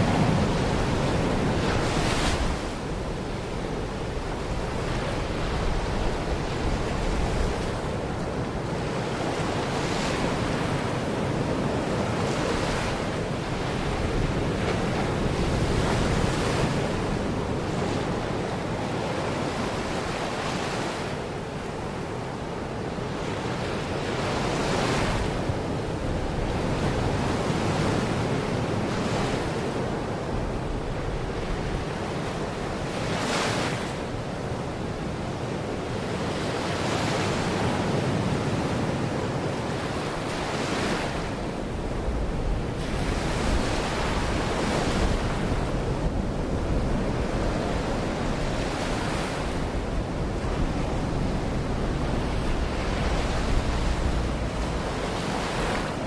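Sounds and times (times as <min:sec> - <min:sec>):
wind rumbling on microphone: 0:00.0 - 0:20.8, 0:24.0 - 0:56.0
sea waves breaking: 0:36.0 - 0:56.0.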